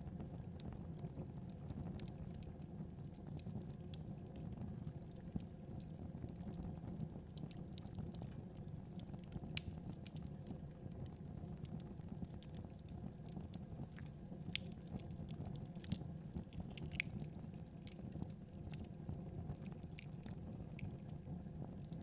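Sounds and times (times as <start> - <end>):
fire crackling and popping: 0.0 - 22.0
wood fire flames rushing: 12.0 - 21.2.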